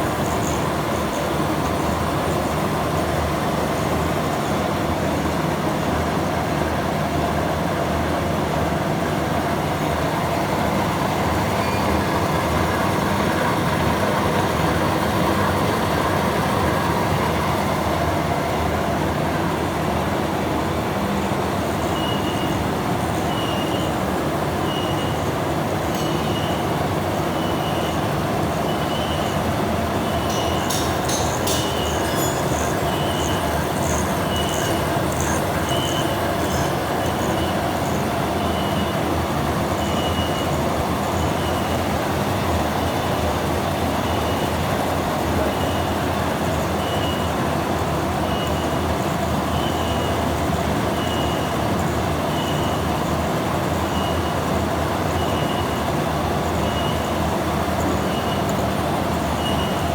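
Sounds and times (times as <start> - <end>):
vehicle engine rumble: 0.0 - 46.9.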